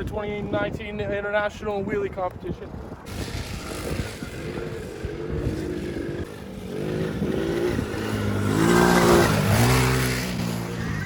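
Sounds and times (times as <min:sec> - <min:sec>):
small atv engine revving: 0:03.1 - 0:11.0.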